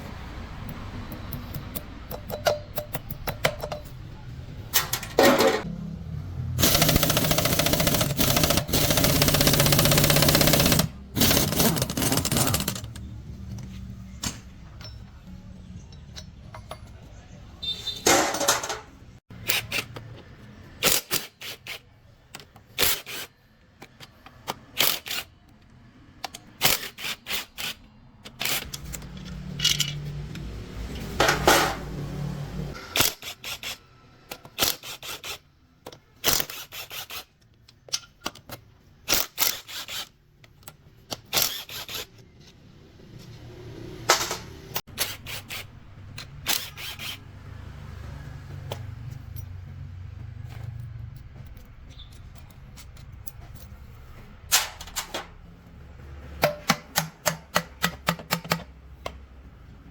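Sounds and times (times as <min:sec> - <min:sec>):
metal tools clicking and clinking: 0:01.5 - 0:04.0, 0:04.7 - 0:05.7, 0:14.2 - 0:15.2, 0:18.0 - 0:20.0, 0:28.2 - 0:30.5, 0:50.6 - 0:55.4
metal scraping: 0:10.6 - 0:13.0.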